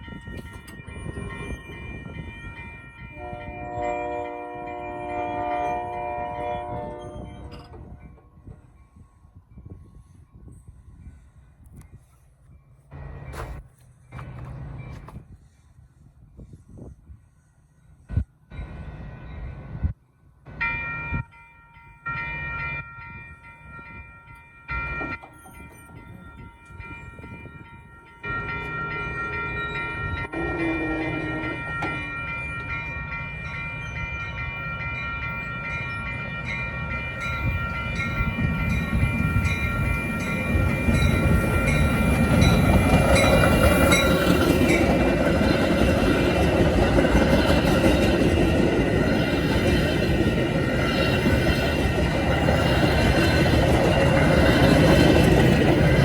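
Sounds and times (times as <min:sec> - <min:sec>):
train rumble and wheel noise: 0:00.0 - 0:56.0
train horn blasts: 0:03.1 - 0:08.0, 0:30.0 - 0:32.2.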